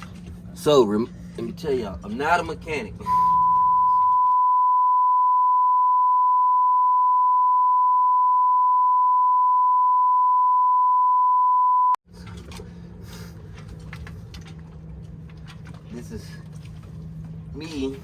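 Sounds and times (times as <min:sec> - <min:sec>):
electronic beep tone: 0:03.0 - 0:12.0.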